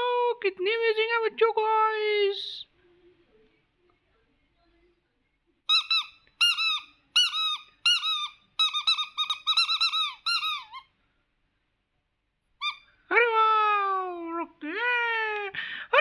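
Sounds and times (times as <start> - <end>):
squeaky toy squeaking: 5.7 - 10.9, 12.6 - 13.0.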